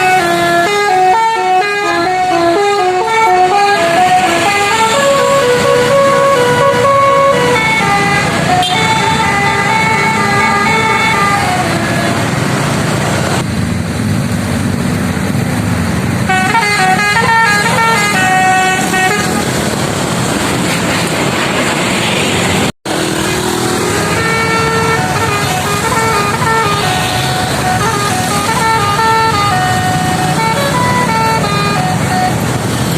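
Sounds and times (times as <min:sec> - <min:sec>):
multi-tone bus horn tune: 0:00.0 - 0:12.4, 0:16.2 - 0:19.7, 0:23.4 - 0:32.9.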